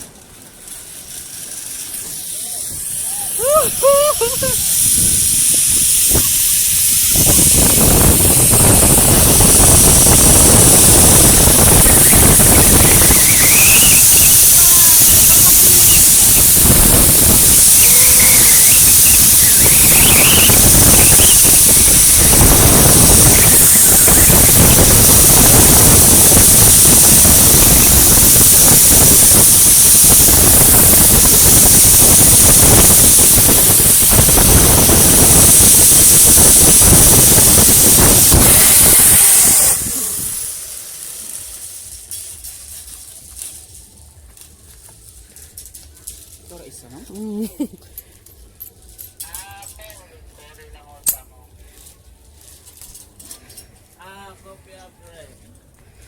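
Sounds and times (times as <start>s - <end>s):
wind roaring over microphone: 2.7s - 40.6s.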